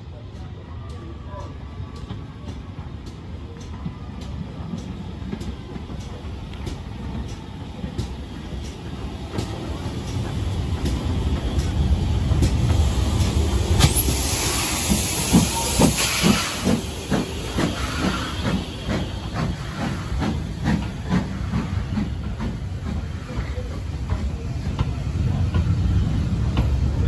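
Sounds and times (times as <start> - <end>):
loud steam hiss: 8.0 - 27.0.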